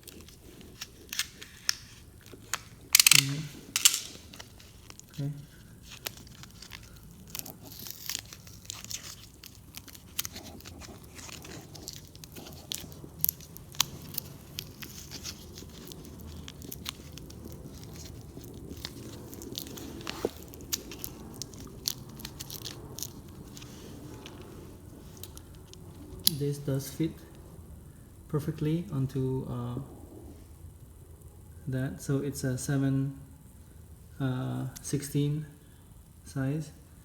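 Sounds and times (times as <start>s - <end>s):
plastic packaging crinkling: 0.0s - 26.5s
metal parts clicking: 0.1s - 1.9s, 2.5s - 4.6s.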